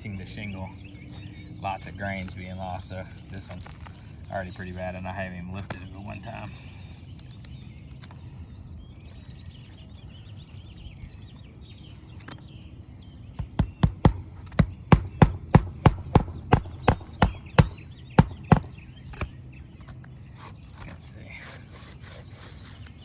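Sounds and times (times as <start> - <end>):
hammer driving nails: 13.4 - 19.3.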